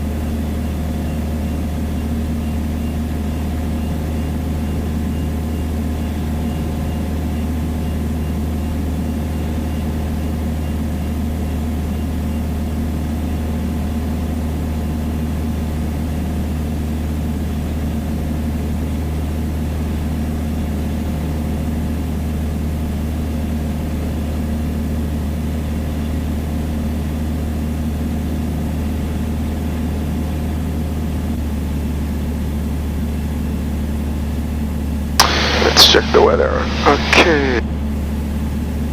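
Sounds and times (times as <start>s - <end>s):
airplane engine and propeller drone: 0.0s - 38.9s.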